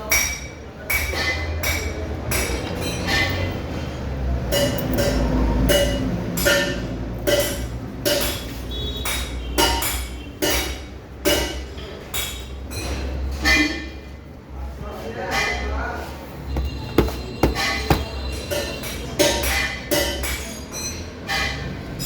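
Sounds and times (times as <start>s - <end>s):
hammer striking metal: 16.6s - 18.3s.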